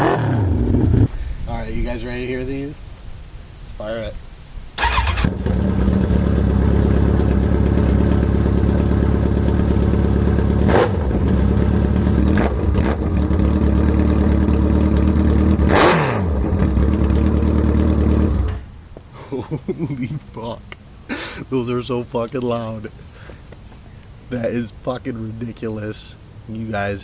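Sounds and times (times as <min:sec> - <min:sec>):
motorcycle engine revving: 0:00.0 - 0:01.1, 0:04.8 - 0:18.6.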